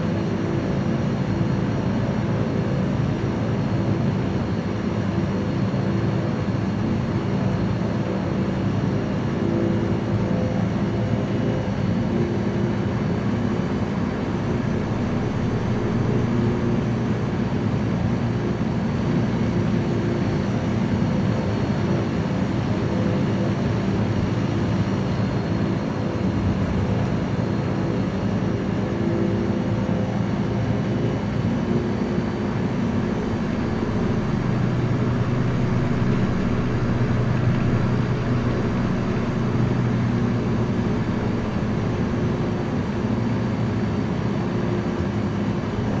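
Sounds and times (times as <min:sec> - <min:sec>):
light aircraft engine and propeller: 0:00.0 - 0:46.0
rushing noise: 0:06.7 - 0:07.7, 0:13.8 - 0:17.0, 0:32.8 - 0:43.4, 0:45.8 - 0:46.0.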